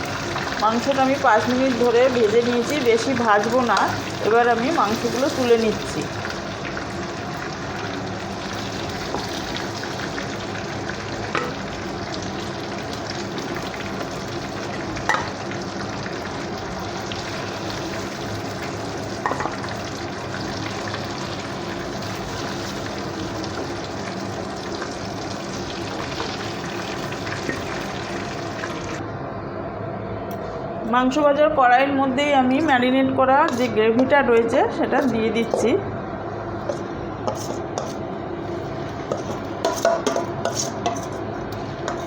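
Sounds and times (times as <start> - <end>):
chicken sizzling in hot oil: 0.0 - 29.0.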